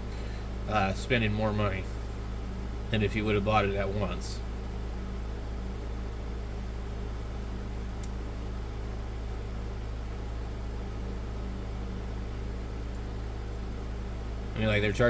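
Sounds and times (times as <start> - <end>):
background hum: 0.0 - 15.0
fan-like hiss: 0.0 - 15.0
faint click: 8.0 - 8.2.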